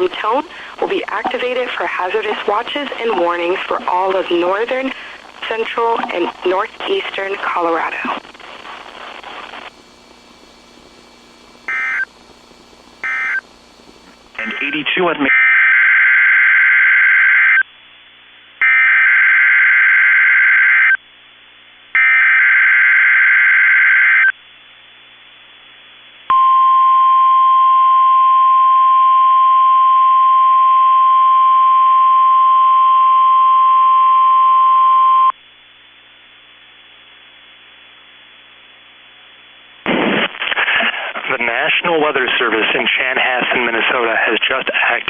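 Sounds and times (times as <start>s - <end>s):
faint radio hiss: 0.0s - 15.4s, 24.1s - 26.3s, 35.4s - 45.0s.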